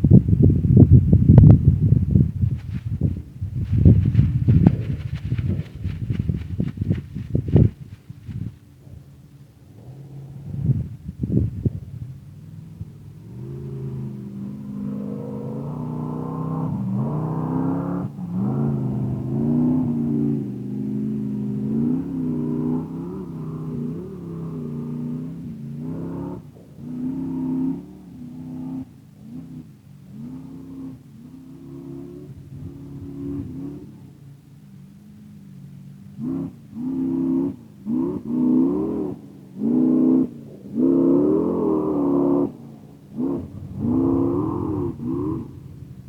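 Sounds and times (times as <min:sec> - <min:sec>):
vehicle engine revving: 0:36.1 - 0:46.0.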